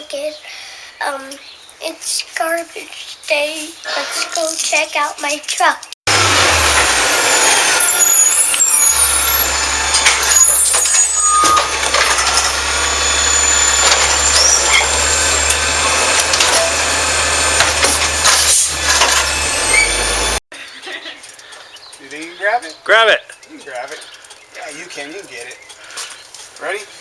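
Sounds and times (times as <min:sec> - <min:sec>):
garbage truck engine drone: 0:06.1 - 0:20.4
high metallic squeals: 0:06.2 - 0:20.4.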